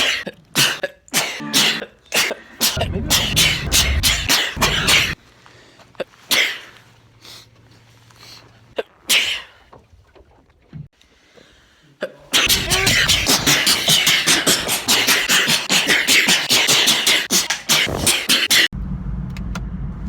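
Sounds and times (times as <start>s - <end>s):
loud rhythmic beat: 1.4s - 1.9s, 2.6s - 5.2s
man sneezing: 12.0s - 18.7s.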